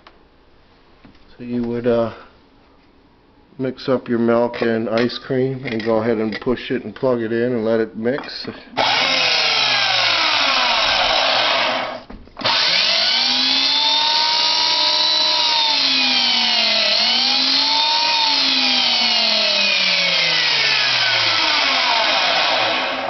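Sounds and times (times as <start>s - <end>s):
mixer motor whining: 8.8s - 23.0s.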